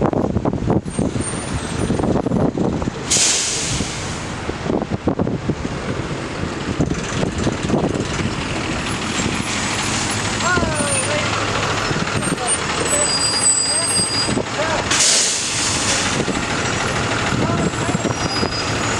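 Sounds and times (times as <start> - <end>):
bus engine running: 0.0 - 18.9
wind buffeting microphone: 0.0 - 18.9
air brakes hissing: 3.1 - 4.5, 11.9 - 16.5.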